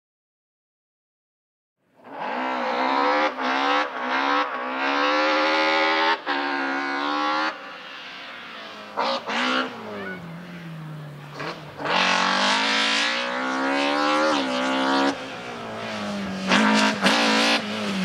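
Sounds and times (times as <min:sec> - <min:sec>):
rally car engine revving: 0:01.9 - 0:18.0.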